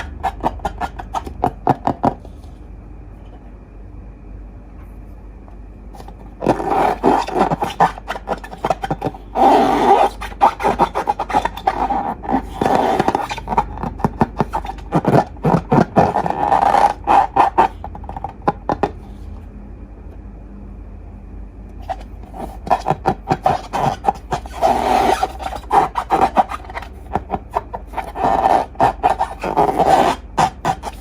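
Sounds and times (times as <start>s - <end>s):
rubber balloons squeaking: 0.0s - 2.2s, 6.0s - 19.0s, 21.8s - 31.0s.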